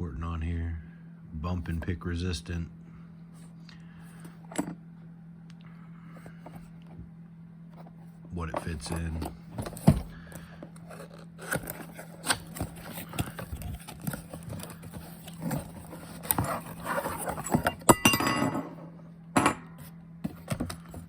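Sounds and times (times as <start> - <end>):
packaging rustling and scraping: 7.7 - 18.0, 19.8 - 21.0.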